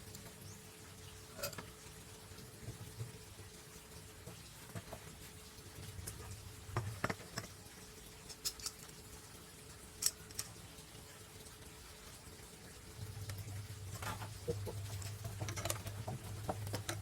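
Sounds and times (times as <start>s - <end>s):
faint steady hum: 0.0s - 17.0s
tools and workpieces tapping: 6.0s - 7.6s, 14.0s - 17.0s.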